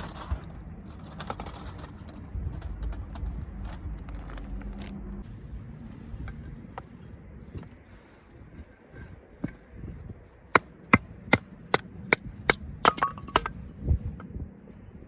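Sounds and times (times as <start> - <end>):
hatchet chopping firewood: 10.5 - 13.5.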